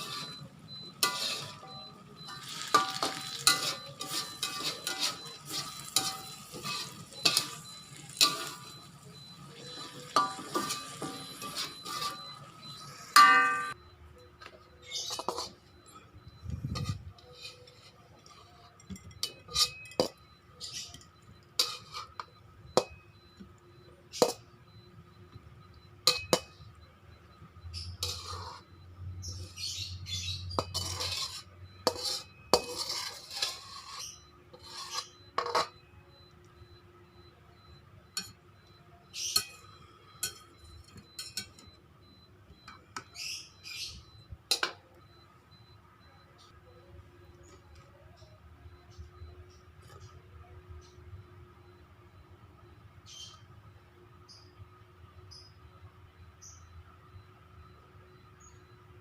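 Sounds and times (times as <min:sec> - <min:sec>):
metal utensil clinking on cookware: 0:00.0 - 0:12.4, 0:13.2 - 0:13.8, 0:16.8 - 0:22.1.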